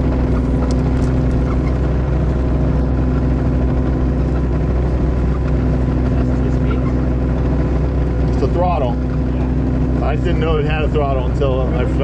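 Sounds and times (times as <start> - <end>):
diesel engine droning: 0.0 - 12.0.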